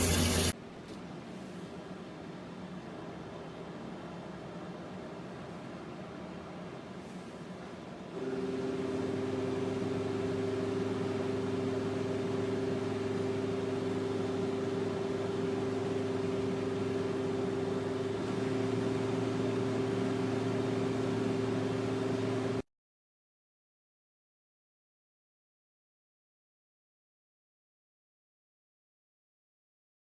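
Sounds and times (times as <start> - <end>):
humidifier fan humming: 0.0 - 0.6, 7.6 - 22.6.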